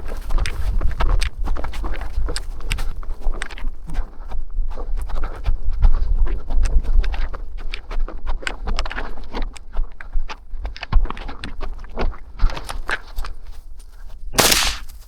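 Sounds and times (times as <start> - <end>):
loud swishing burst: 14.4 - 14.8
footsteps crunching through dry brush: 14.4 - 15.0.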